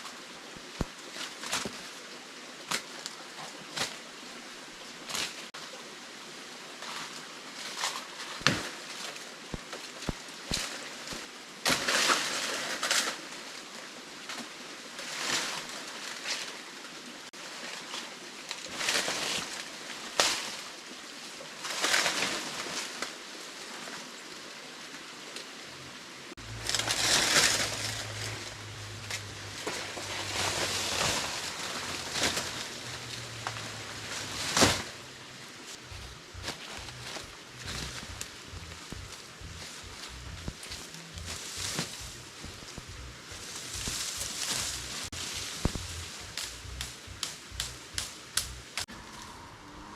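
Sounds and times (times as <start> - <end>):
dry leaves crunching and rustling: 17.4 - 20.8, 21.4 - 23.2, 26.4 - 49.5
low steady hum: 26.4 - 49.9.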